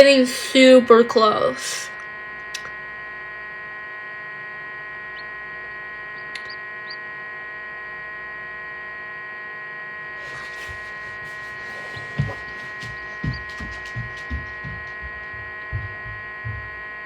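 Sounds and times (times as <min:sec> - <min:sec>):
egg incubator electrical hum: 0:00.0 - 0:17.0
chicks peeping: 0:06.2 - 0:07.0, 0:10.2 - 0:15.9.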